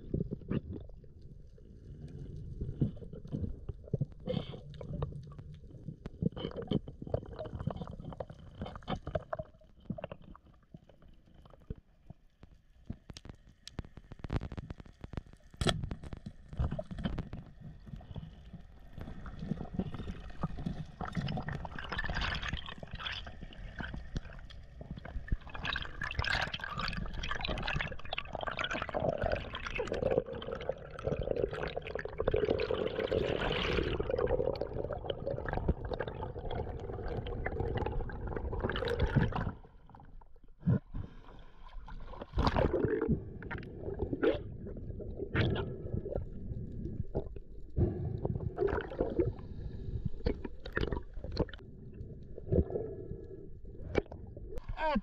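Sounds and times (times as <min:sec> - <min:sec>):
water sloshing and gurgling: 0:00.0 - 0:55.0
small clicks and crackles: 0:00.1 - 0:30.0.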